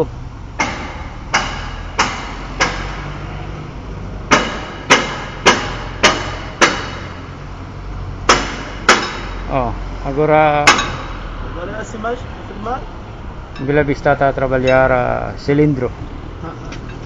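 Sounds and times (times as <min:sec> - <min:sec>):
hammer blows on metal: 0:04.3 - 0:07.3, 0:08.2 - 0:09.5, 0:10.6 - 0:11.3.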